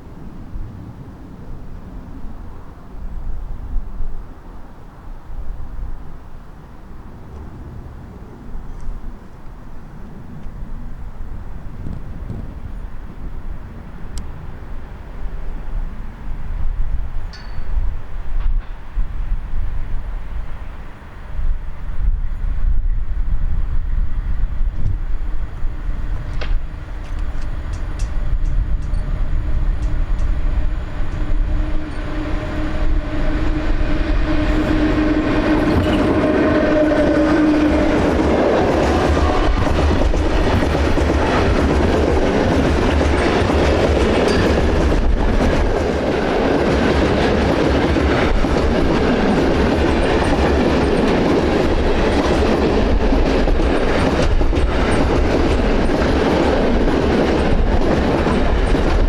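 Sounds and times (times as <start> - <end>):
train humming: 0.0 - 59.0
train wheels clattering: 26.1 - 59.0.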